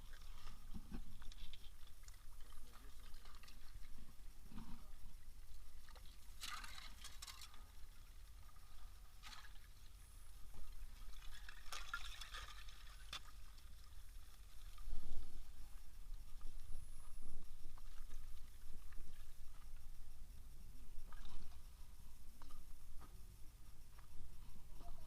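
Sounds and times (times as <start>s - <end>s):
water pouring and trickling: 0.0s - 4.4s, 5.0s - 16.7s.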